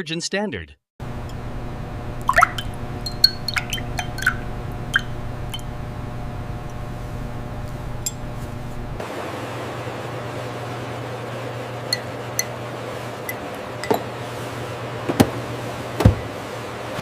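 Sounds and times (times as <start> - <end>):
machinery hum: 1.0 - 17.0
liquid dripping: 2.2 - 5.8
glassy clinks: 3.0 - 4.4.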